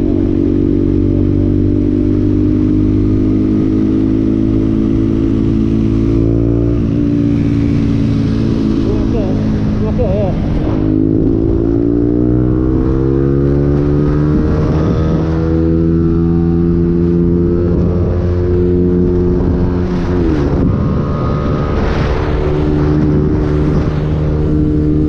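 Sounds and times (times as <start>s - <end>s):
vehicle engine running: 2.0s - 13.5s.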